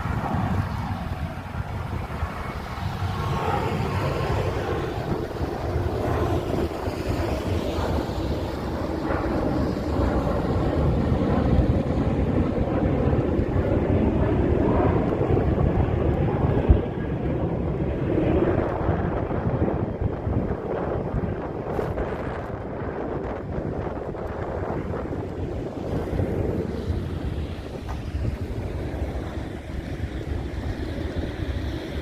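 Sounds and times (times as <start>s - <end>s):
wind buffeting microphone: 0.0s - 32.0s.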